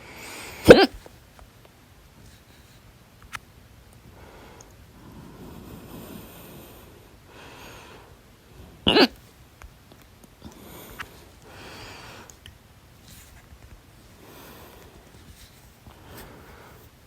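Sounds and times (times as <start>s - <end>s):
soft breaths: 0.0s - 1.1s, 4.0s - 9.4s, 10.2s - 17.0s
person hiccuping: 0.6s - 1.0s, 8.9s - 9.2s.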